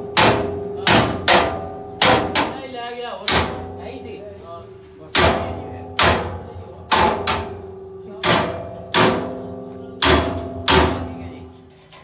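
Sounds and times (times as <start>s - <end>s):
hammer striking steel: 0.0s - 4.0s, 5.1s - 11.5s.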